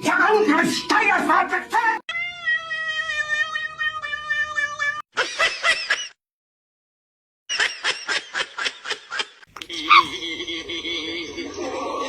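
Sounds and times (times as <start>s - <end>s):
cat yowling: 2.1s - 5.0s, 9.7s - 10.3s.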